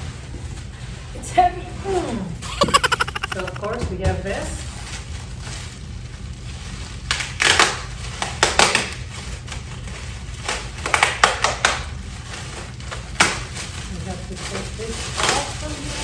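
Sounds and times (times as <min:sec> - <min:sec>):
packaging crinkling and rustling: 0:04.7 - 0:16.0.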